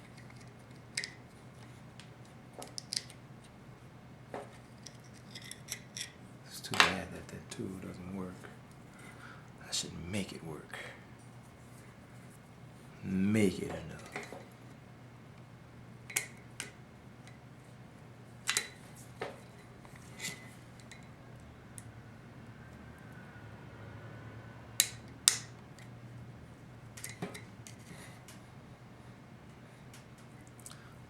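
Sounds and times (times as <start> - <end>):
steady low hum: 5.2 - 16.3.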